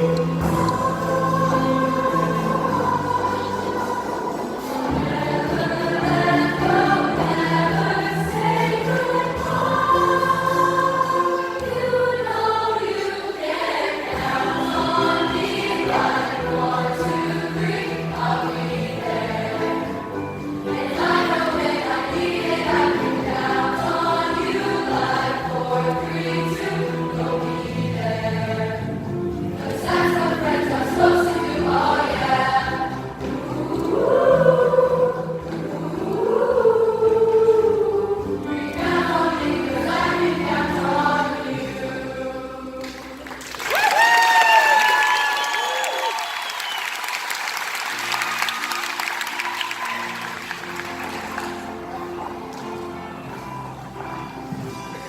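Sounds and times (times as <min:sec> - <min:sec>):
choir singing: 0:00.0 - 0:43.5.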